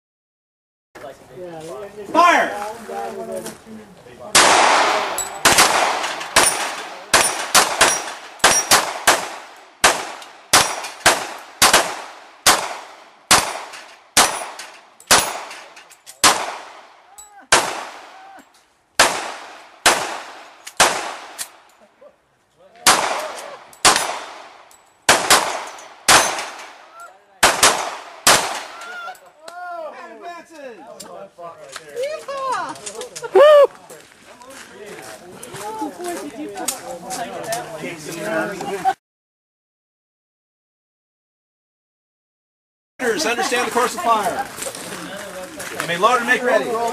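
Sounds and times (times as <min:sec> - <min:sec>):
rapid gunshots with echo: 0:04.4 - 0:18.1, 0:19.0 - 0:21.4, 0:22.9 - 0:26.8, 0:27.4 - 0:28.7.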